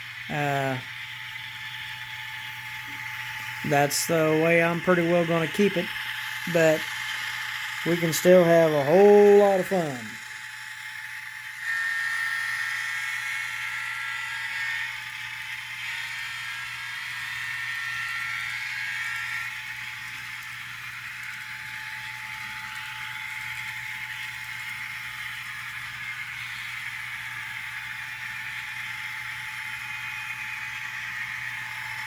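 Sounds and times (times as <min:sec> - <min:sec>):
model locomotive whine: 0:00.0 - 0:32.0.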